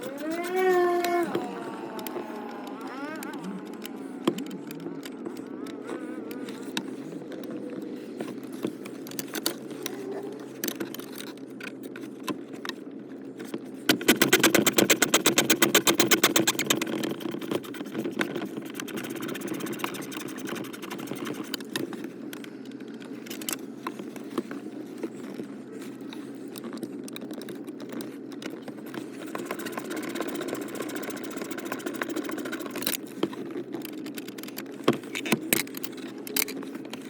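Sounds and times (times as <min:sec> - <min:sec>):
knocks and clicks of tools: 0:13.4 - 0:20.3.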